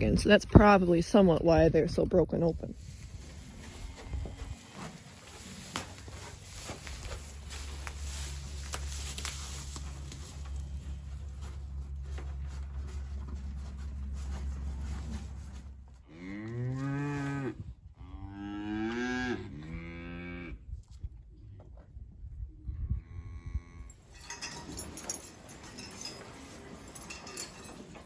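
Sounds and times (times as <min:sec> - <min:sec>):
low hum: 0:00.0 - 0:16.7
light rustling: 0:02.9 - 0:15.9.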